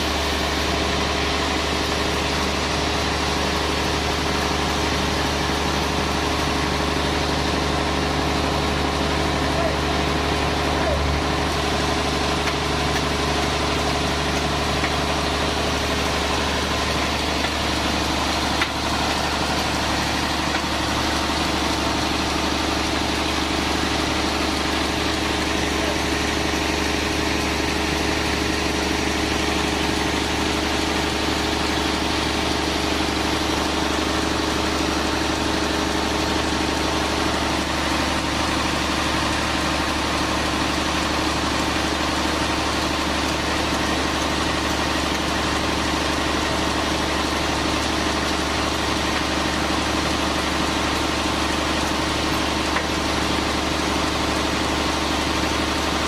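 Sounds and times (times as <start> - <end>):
sawmill machinery humming: 0.0 - 56.0.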